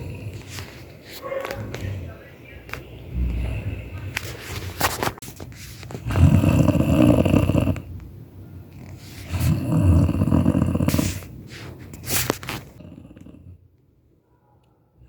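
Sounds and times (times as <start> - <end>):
loud pig-like snoring: 0.0 - 0.7, 6.0 - 8.0, 8.7 - 13.6.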